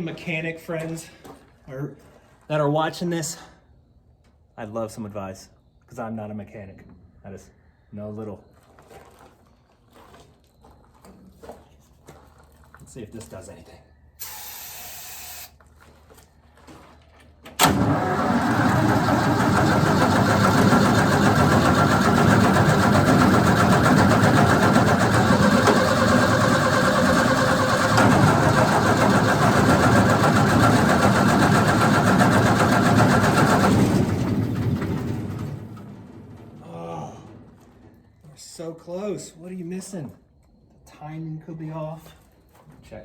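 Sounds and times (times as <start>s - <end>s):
starter motor cranking engine: 17.5s - 37.6s.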